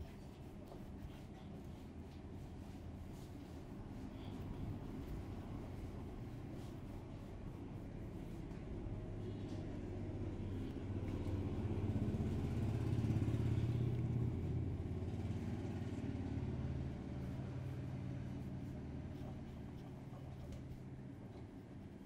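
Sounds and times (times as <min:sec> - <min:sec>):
vehicle engine running: 0:10.5 - 0:19.8.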